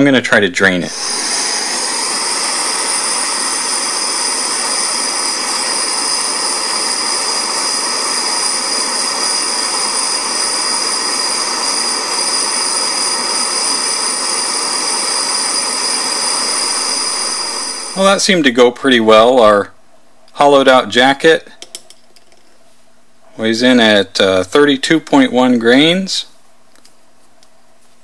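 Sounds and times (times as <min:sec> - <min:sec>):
high-speed drill whining: 0:00.8 - 0:18.2.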